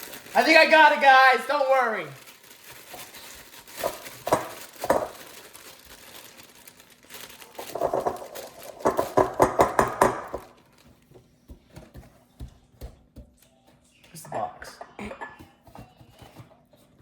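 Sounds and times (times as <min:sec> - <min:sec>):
plastic packaging crinkling: 0:00.0 - 0:11.2.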